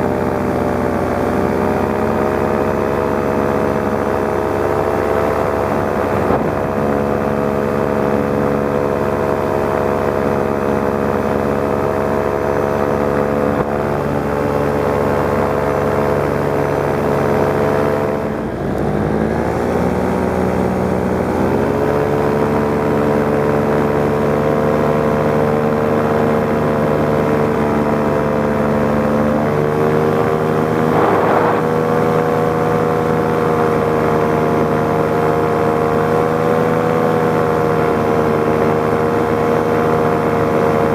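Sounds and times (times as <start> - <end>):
paramotor engine and propeller: 0.0 - 40.9.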